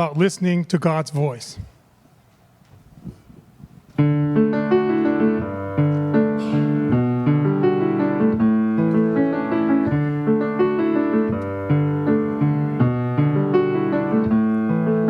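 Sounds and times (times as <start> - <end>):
piano playing slow chords: 4.0 - 15.0.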